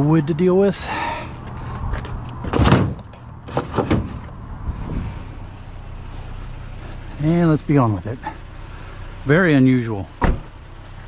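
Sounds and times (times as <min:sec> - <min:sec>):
vehicle engine idling: 0:00.0 - 0:11.0
scrap metal clunking and rattling: 0:01.4 - 0:04.4.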